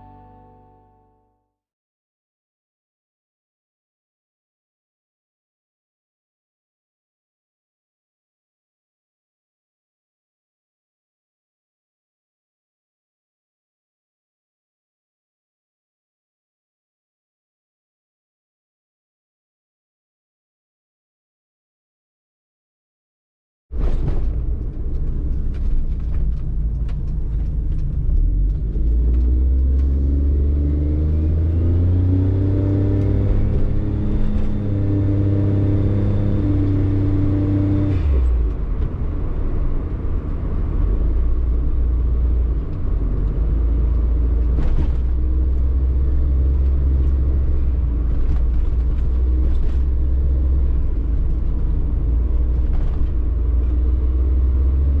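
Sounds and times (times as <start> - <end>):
road noise: 23.8 - 55.0
car engine accelerating: 24.4 - 55.0.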